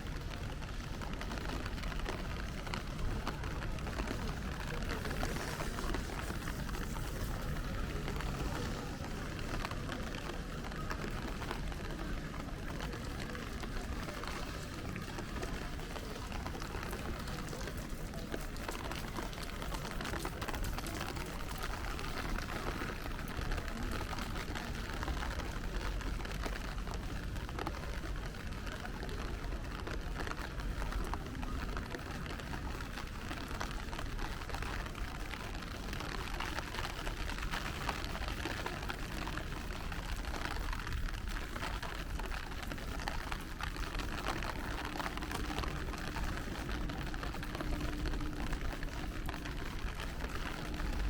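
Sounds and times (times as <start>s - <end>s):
low rumble of traffic: 0.0s - 51.0s
rain falling on street: 0.0s - 51.0s
faint steady hum: 33.8s - 51.0s.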